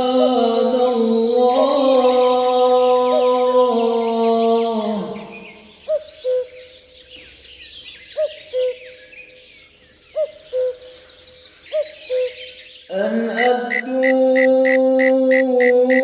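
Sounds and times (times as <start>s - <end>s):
person chanting: 0.0s - 5.8s, 12.9s - 16.0s
small birds twittering: 0.0s - 16.0s.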